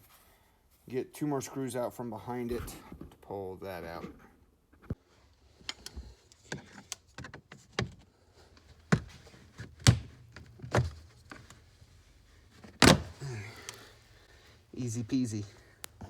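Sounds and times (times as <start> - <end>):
plastic trim clicks and knocks: 8.9 - 11.6.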